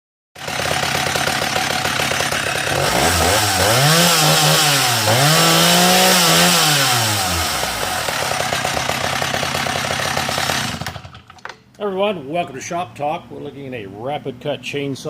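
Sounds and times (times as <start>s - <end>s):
chainsaw idling and revving: 0.4s - 11.4s.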